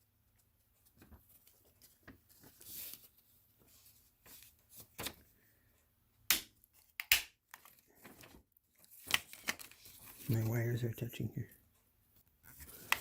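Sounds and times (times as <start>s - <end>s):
hands handling plastic remote: 6.8s - 10.4s, 12.5s - 13.0s.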